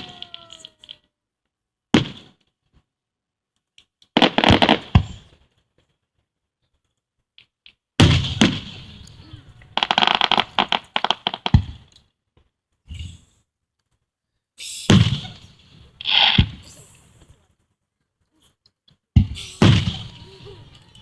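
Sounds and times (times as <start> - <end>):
crackling pops of fireworks: 0.0 - 1.1, 1.9 - 2.8, 3.8 - 5.9, 7.4 - 12.1, 14.6 - 17.5, 19.2 - 21.0
fireworks bangs: 4.2 - 5.3, 8.0 - 11.9, 14.9 - 16.9, 19.2 - 21.0.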